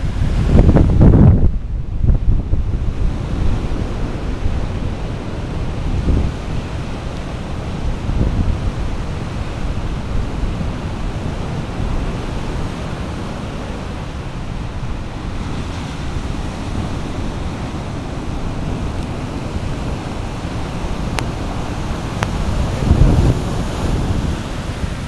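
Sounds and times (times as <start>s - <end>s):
surf breaking and washing ashore: 0.0s - 25.0s
wind buffeting microphone: 0.0s - 25.0s.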